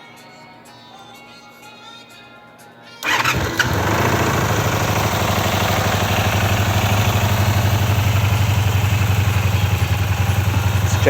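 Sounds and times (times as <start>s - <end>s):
faint music: 0.0s - 3.3s
motorcycle engine starting and idling: 3.0s - 11.0s.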